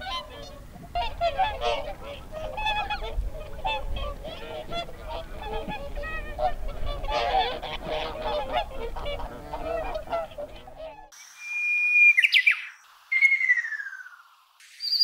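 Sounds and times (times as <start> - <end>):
swans calling: 0.0 - 11.2.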